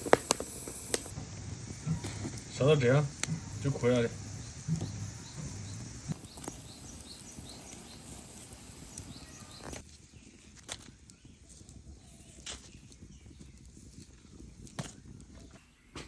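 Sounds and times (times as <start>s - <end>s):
faint high chirp: 4.4s - 9.8s.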